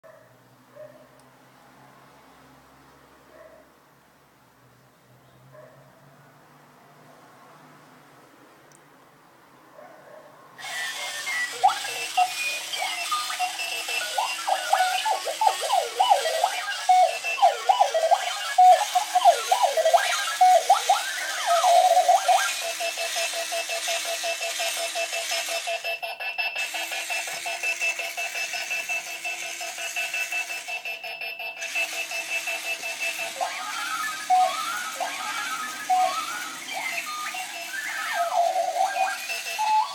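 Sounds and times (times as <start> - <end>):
alarm clock beeping: 10.6 - 39.9.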